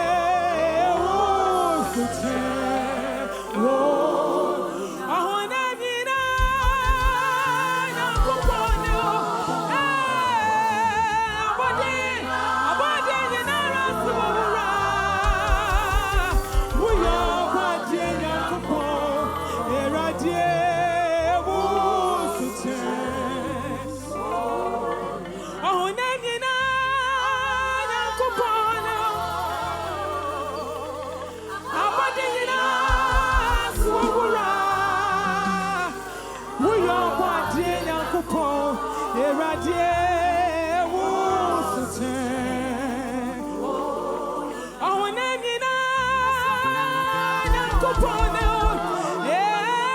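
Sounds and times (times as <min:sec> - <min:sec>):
voices singing gospel music: 0:00.0 - 0:49.9
low bass notes: 0:06.2 - 0:12.7, 0:13.5 - 0:31.8, 0:32.8 - 0:44.8.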